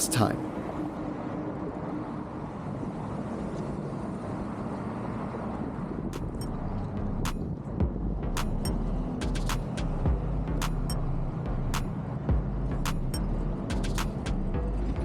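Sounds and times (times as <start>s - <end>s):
traffic rumble: 0.0s - 15.0s
sharp clicks: 6.2s - 6.5s, 8.4s - 9.9s, 10.6s - 11.0s, 12.9s - 14.4s.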